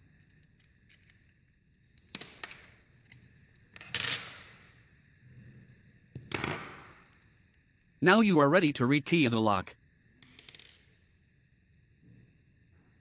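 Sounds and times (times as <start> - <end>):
metal parts clinking on hard surface: 0.2 - 4.6, 10.2 - 11.0.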